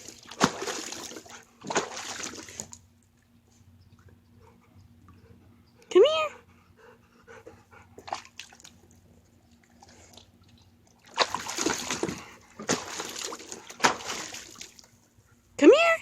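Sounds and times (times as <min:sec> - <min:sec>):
dog splashing in water: 0:00.0 - 0:02.8, 0:09.8 - 0:14.9.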